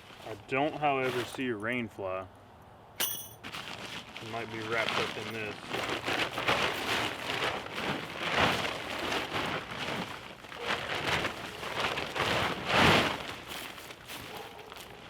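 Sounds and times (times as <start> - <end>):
tent fabric rustling: 0.0 - 1.5, 3.4 - 15.0.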